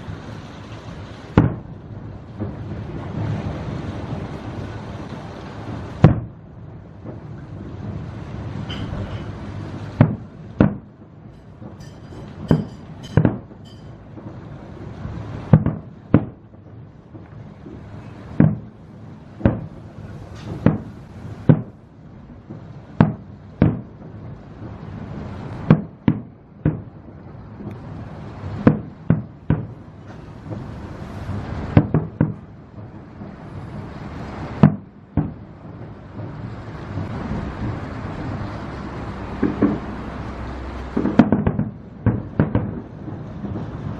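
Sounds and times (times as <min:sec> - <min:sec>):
steady low rumble: 0:00.0 - 0:43.9
fireworks shells bursting: 0:10.0 - 0:14.4.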